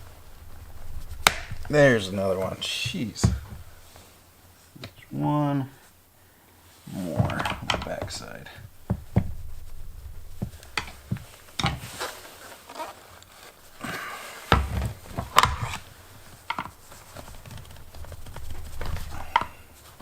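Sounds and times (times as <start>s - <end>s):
plastic parts rubbing: 0.0s - 5.4s, 6.8s - 20.0s
hard plastic parts clicking and knocking: 7.2s - 11.9s, 14.5s - 19.6s.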